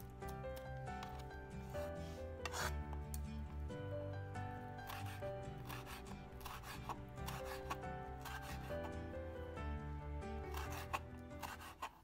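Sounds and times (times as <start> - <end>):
background music: 0.0 - 12.0
knife slicing on cutting board: 2.0 - 2.9, 4.8 - 9.0, 10.5 - 12.0.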